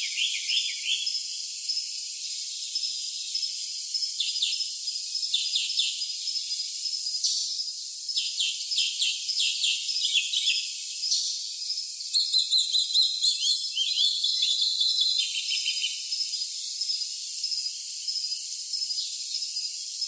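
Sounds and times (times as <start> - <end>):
songbirds singing: 0.0 - 1.2, 4.0 - 6.3, 8.1 - 17.1
crickets chirping: 0.0 - 20.0.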